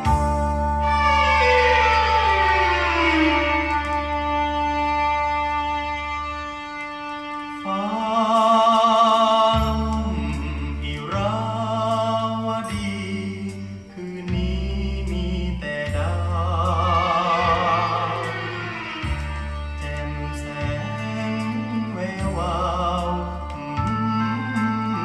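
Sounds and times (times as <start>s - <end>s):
instrumental accompaniment: 0.0s - 25.0s
man singing with vibrato: 7.6s - 25.0s.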